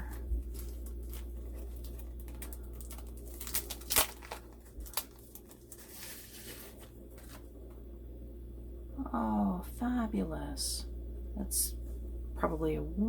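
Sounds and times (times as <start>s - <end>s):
paper and packaging rustling: 0.0s - 7.6s.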